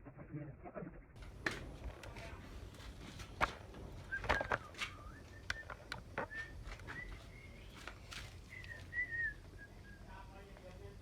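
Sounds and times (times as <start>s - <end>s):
person whistling a tune: 4.1s - 7.7s, 8.5s - 10.1s.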